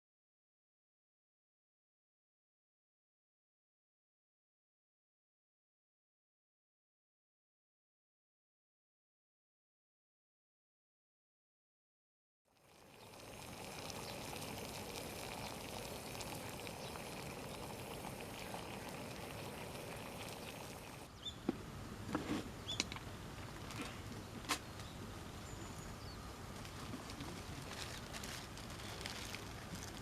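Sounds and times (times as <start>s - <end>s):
steady outdoor hiss: 12.5s - 30.0s.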